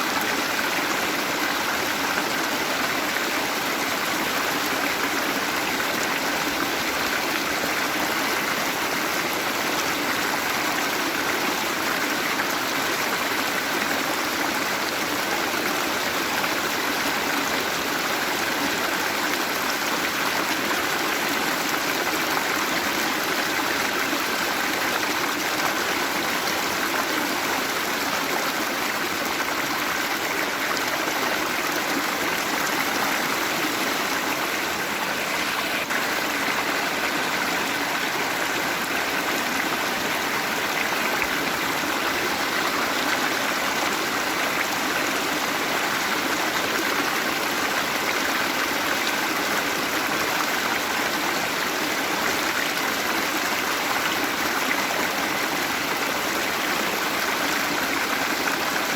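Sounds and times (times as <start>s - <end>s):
waterfall rushing: 19.1s - 52.2s.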